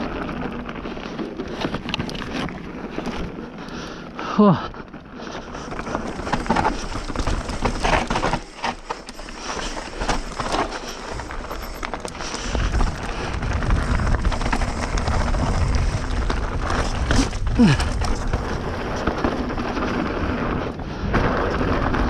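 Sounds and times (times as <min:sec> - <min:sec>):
bike tyres crunching over dirt: 0:00.0 - 0:22.0
wind rumble on microphone: 0:09.7 - 0:22.0.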